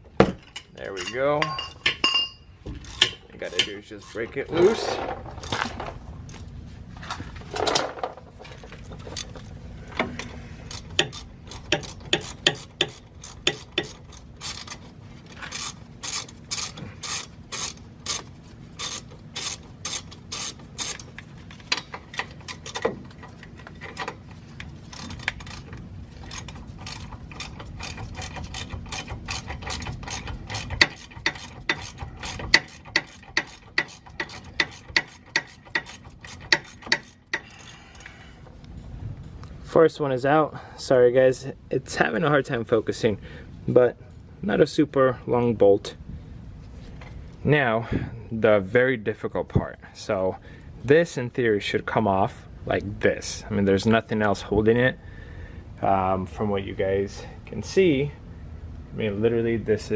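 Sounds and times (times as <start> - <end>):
hand ratchet clicking: 2.8 - 4.2, 10.7 - 38.1.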